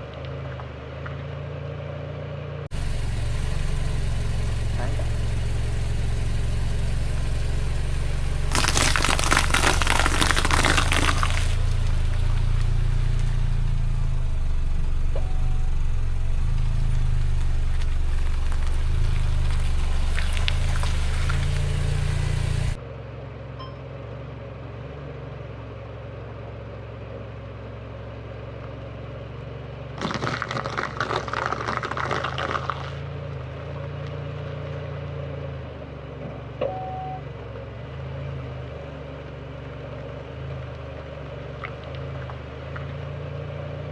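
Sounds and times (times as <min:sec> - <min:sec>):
car engine hum: 0:00.0 - 0:43.9
tyres crushing apples: 0:02.7 - 0:22.8, 0:29.9 - 0:34.3.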